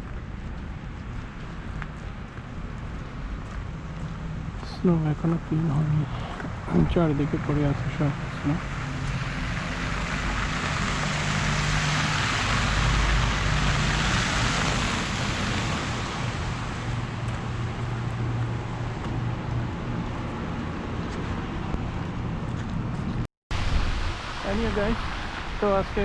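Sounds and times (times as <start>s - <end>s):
tyre noise of passing vehicles: 0.0s - 26.0s.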